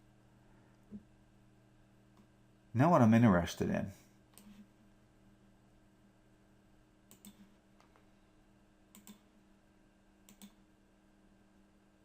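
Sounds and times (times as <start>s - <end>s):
low steady hum: 0.0s - 12.0s
computer mouse clicks: 4.3s - 4.7s, 7.1s - 8.1s, 8.9s - 9.3s, 10.2s - 10.6s.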